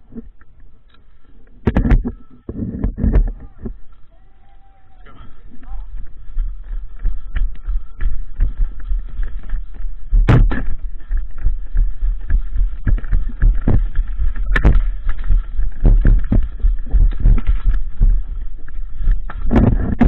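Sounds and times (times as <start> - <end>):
knocks and clicks on camera: 1.6 - 3.8
wind buffeting microphone: 5.0 - 20.0.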